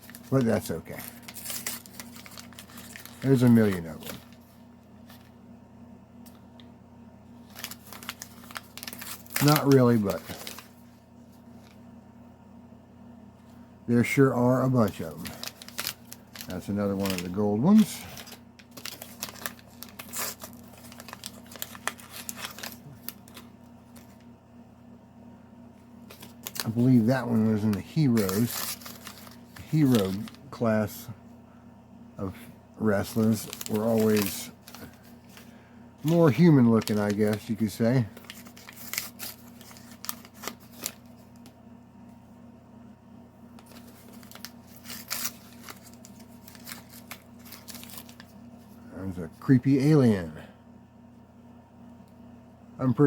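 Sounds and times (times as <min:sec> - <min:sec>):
plastic wrappers crinkling and tearing: 0:00.0 - 0:05.4, 0:07.4 - 0:11.8, 0:14.3 - 0:24.2, 0:26.0 - 0:31.0, 0:32.8 - 0:41.5, 0:43.6 - 0:48.7
faint steady hum: 0:00.0 - 0:53.0.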